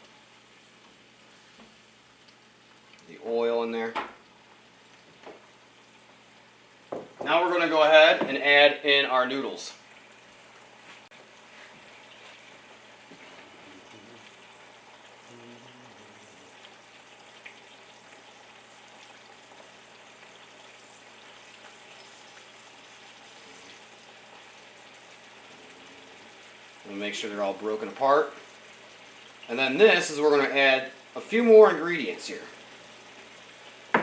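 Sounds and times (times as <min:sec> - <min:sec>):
vegetables sizzling in a pan: 0:00.0 - 0:03.2, 0:09.8 - 0:34.0.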